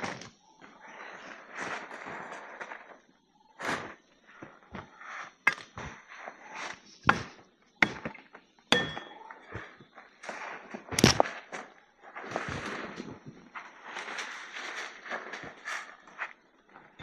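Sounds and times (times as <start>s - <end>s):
rustling: 9.5s - 17.0s.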